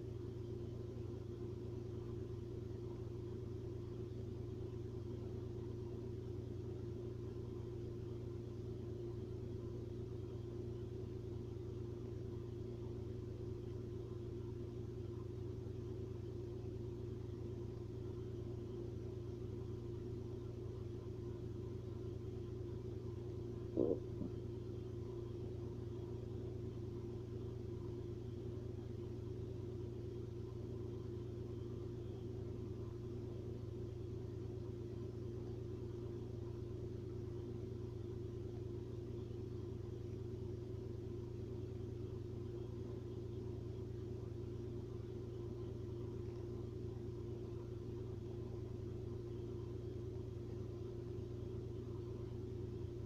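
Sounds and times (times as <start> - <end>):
steady low hum: 0.0 - 53.0
stomach growling: 23.6 - 24.5.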